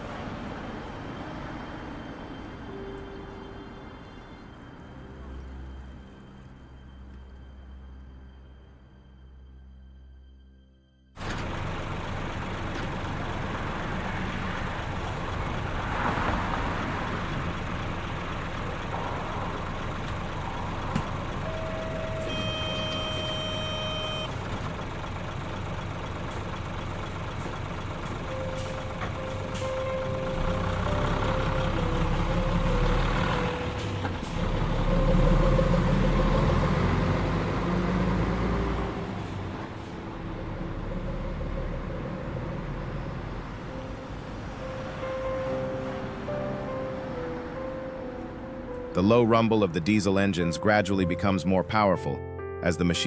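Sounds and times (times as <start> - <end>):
combine harvester rumble: 11.2 - 53.0
tone: 21.4 - 24.4.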